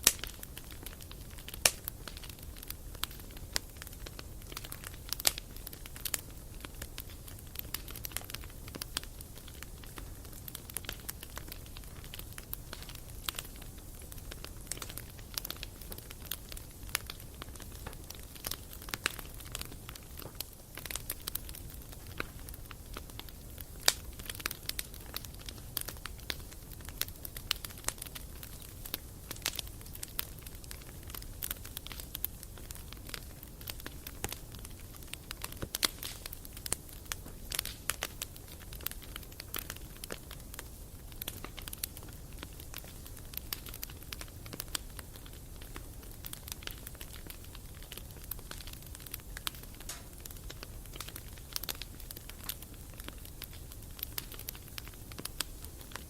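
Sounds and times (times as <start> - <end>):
campfire crackling and popping: 0.0 - 56.0.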